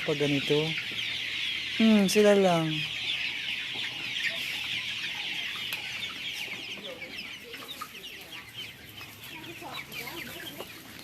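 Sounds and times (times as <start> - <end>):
chicks peeping: 0.0 - 11.0.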